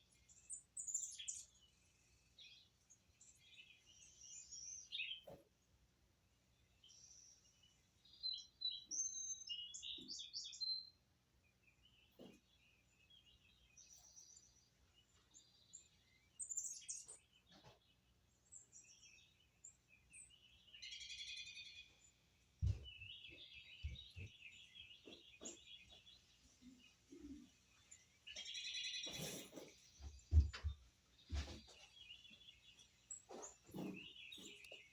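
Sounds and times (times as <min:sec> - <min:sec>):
birds chirping: 0:00.0 - 0:34.9
soft knocks: 0:30.0 - 0:31.8.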